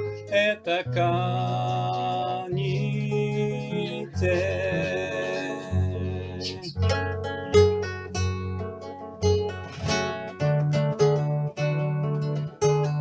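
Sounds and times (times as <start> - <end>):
person singing: 0.0 - 7.0
plucked acoustic guitar: 0.0 - 13.0.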